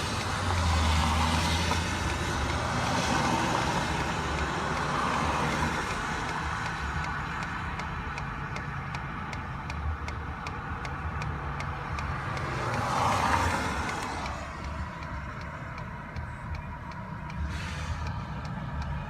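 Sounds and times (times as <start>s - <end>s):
rapid regular clicking: 0.0s - 19.0s
hiss: 17.4s - 18.2s.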